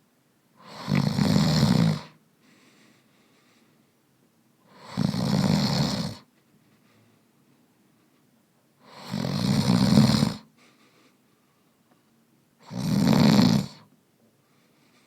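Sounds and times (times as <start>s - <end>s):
rattling snores: 0.6s - 2.2s, 4.8s - 6.3s, 8.9s - 10.5s, 12.6s - 13.9s.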